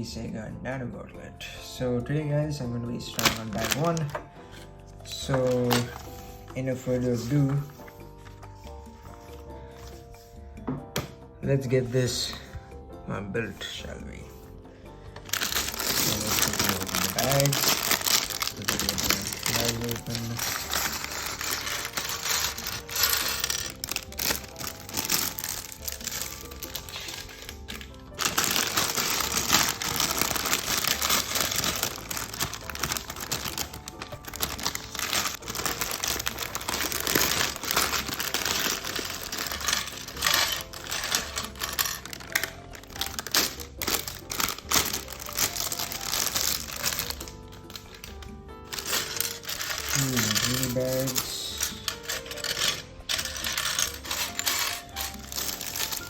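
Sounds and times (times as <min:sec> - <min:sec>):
plastic bag tearing and crinkling: 0:03.1 - 0:04.2, 0:15.3 - 0:56.0
plastic pieces rattling: 0:03.2 - 0:04.2, 0:05.1 - 0:06.1, 0:15.3 - 0:56.0.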